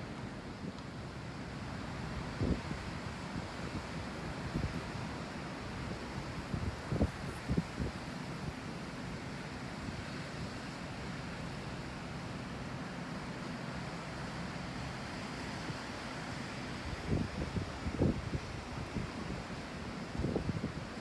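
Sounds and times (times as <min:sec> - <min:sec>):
ocean surf: 0:00.0 - 0:06.9
wind rushing over microphone: 0:01.8 - 0:10.6, 0:15.4 - 0:21.0.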